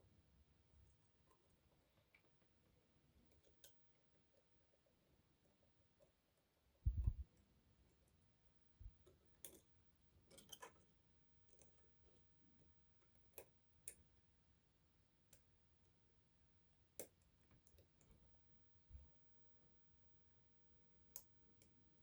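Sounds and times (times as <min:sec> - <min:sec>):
low thump: 0:06.9 - 0:07.2.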